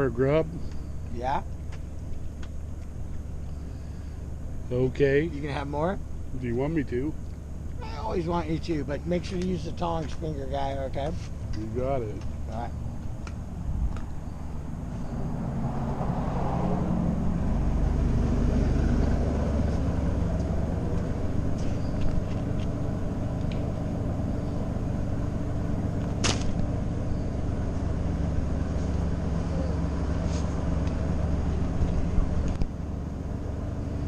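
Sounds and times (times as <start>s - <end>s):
low engine rumble: 0.0s - 34.0s
sharp click: 26.0s - 26.6s.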